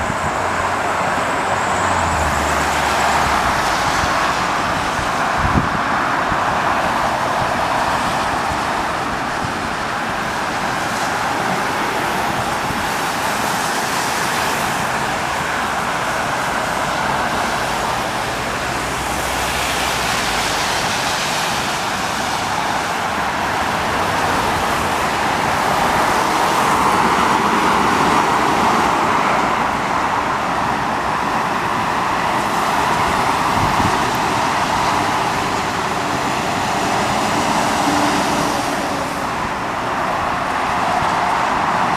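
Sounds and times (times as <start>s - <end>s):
tyre and road noise: 0.0s - 41.9s.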